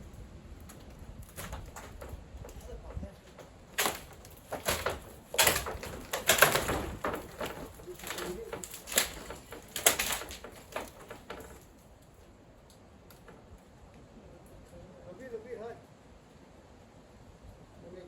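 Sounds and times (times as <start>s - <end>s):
wooden timbers knocking and cracking: 0.6s - 12.4s, 13.0s - 13.7s.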